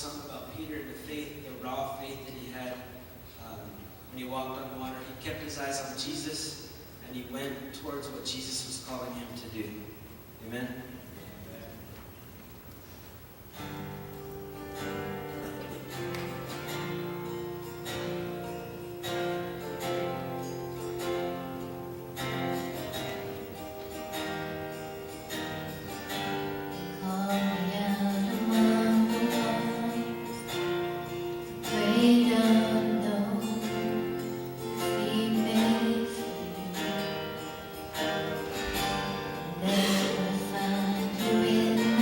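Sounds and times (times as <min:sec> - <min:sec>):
acoustic guitar strumming: 0:13.3 - 0:42.0.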